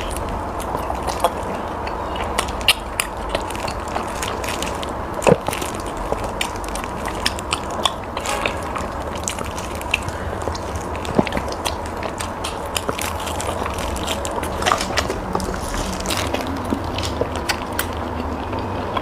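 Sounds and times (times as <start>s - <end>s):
biting and chewing: 0.0s - 19.0s
wet mouth clicks and smacks: 16.2s - 18.3s.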